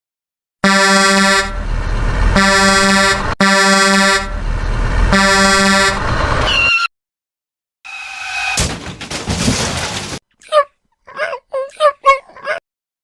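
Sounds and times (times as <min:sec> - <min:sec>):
horn blasts: 0:00.6 - 0:01.7, 0:02.3 - 0:04.4, 0:05.1 - 0:06.6
rumbling noise: 0:01.5 - 0:03.4, 0:04.3 - 0:06.5.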